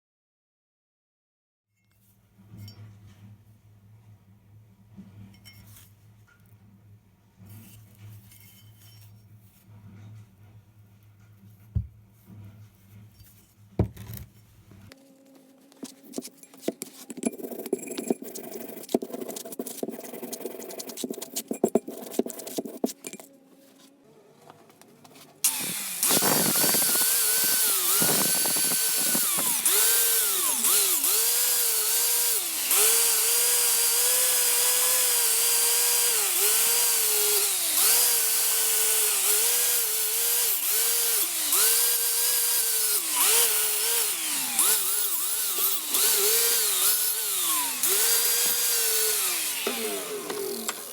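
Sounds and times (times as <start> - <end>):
electric power tool running: 25.4 - 50.9.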